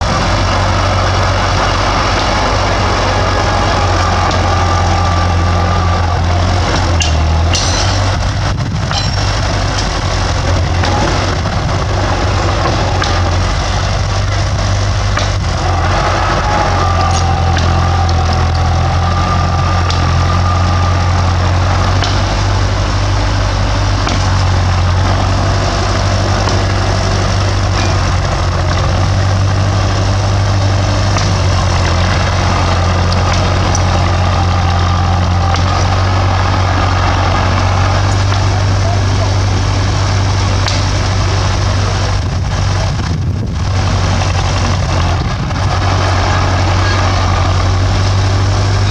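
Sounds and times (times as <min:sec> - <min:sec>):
bulldozer diesel engine: 0:00.0 - 0:48.9
high whine: 0:00.0 - 0:48.9
sharp knocks: 0:03.9 - 0:11.6.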